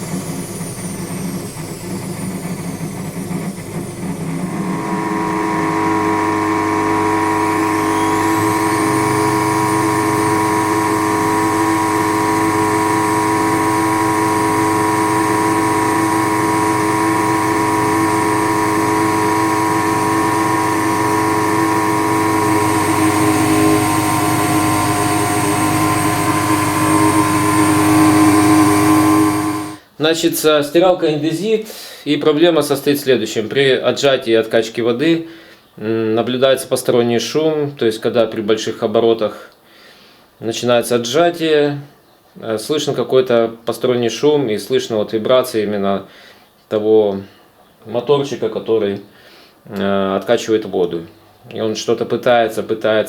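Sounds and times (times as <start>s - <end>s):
drain pump motor droning: 0.0s - 29.8s
short rising whine: 0.0s - 29.8s.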